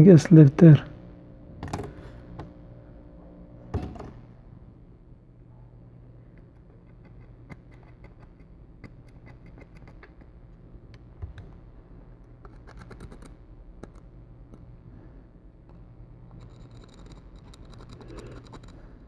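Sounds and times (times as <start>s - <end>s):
low hum: 0.0s - 8.9s.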